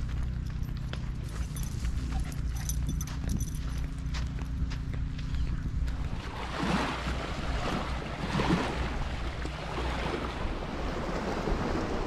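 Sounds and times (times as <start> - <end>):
surf washing ashore: 6.1 - 12.0.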